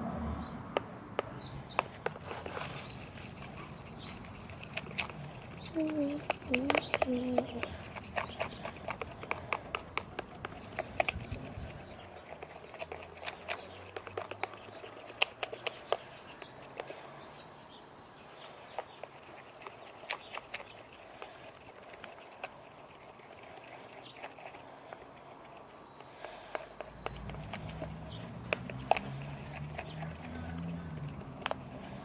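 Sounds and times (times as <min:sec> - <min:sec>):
utensil tapping container: 0:04.6 - 0:11.2.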